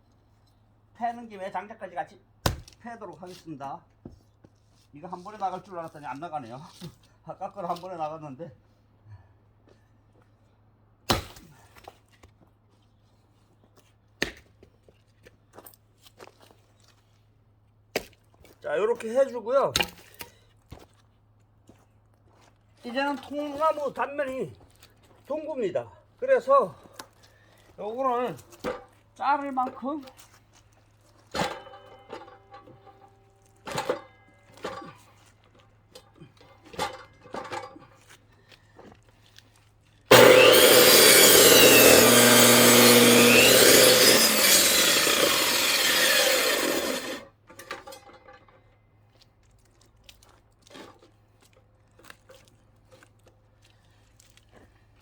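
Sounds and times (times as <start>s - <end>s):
axe splitting firewood: 2.4s - 2.8s, 11.1s - 12.0s, 14.2s - 14.6s, 19.7s - 20.4s, 28.5s - 28.9s, 31.3s - 35.0s, 40.1s - 48.2s.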